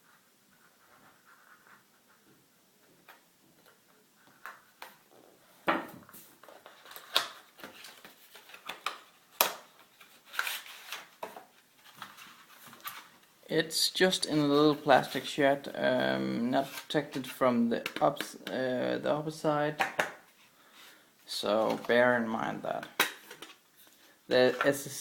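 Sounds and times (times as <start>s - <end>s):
cardboard rustling: 6.0s - 13.3s
plastic snaps: 22.8s - 23.6s.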